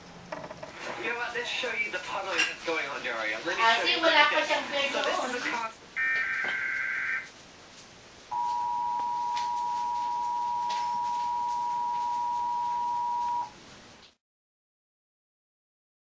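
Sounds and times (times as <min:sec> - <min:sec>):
steady electronic beep: 0:08.3 - 0:13.5.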